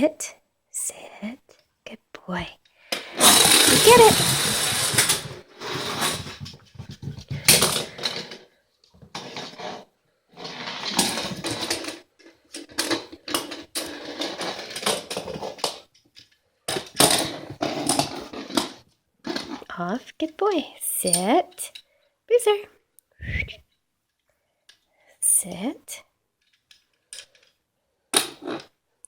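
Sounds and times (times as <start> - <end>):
puppy scuffling with toy car: 3.1 - 15.8, 16.7 - 19.7.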